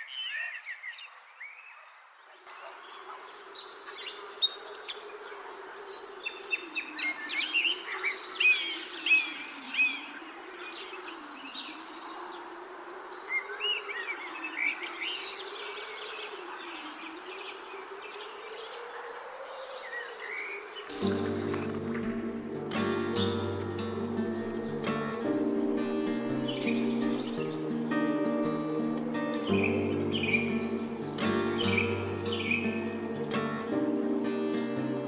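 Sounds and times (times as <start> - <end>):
high insect drone: 2.9 - 35.0
birds chirping: 19.8 - 35.0.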